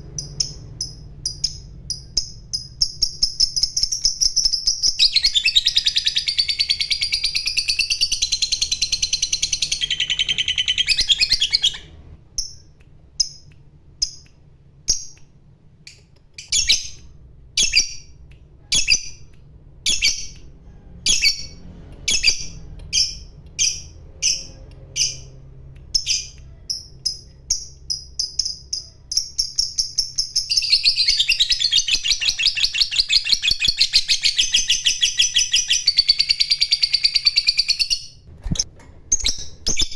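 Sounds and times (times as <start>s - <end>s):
bird chattering trill: 0.0s - 14.2s
sharp bird chirps: 0.0s - 15.3s, 15.9s - 38.6s.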